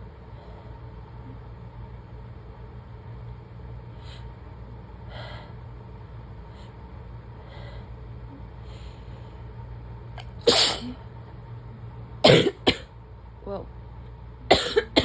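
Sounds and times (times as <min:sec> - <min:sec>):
steady low hum: 0:00.0 - 0:15.0
person sneezing: 0:10.4 - 0:11.0.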